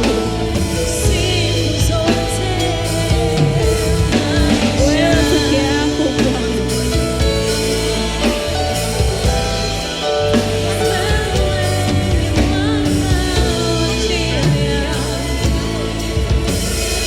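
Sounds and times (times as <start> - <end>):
band playing bass and keyboard: 0.0 - 17.0
person singing: 0.0 - 17.0.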